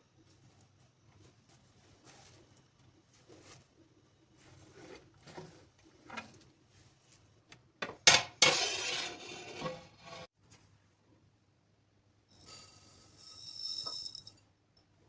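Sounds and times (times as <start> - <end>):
kitchenware clattering: 7.8 - 10.3
kitchenware clinking: 7.8 - 10.3.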